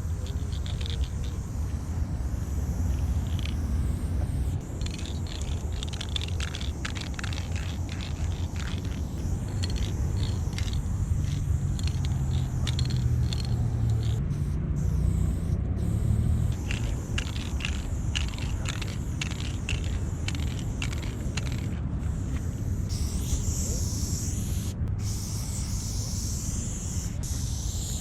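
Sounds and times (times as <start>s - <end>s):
spray can ball rattling: 0.0s - 3.7s, 4.6s - 14.2s, 16.6s - 28.0s
low steady rumble: 0.0s - 25.4s.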